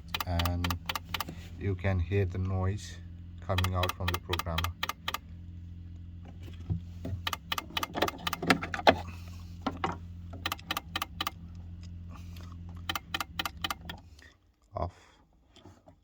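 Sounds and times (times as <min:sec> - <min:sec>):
sharp crackling clicks: 0:00.0 - 0:01.3, 0:03.5 - 0:05.2
low electrical hum: 0:00.0 - 0:16.0.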